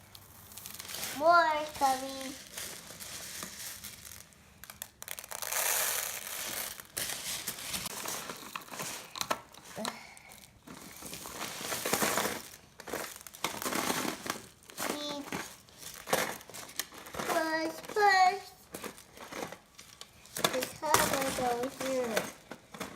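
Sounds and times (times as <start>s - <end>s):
plastic toys scraping through sand: 0.5s - 4.2s.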